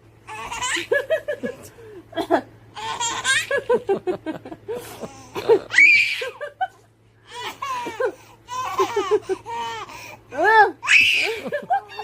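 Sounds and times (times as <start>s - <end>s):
baby laughing: 0.3s - 1.5s, 2.8s - 3.9s, 4.9s - 6.6s, 7.3s - 10.2s, 10.8s - 12.0s
baby squealing: 5.7s - 6.2s.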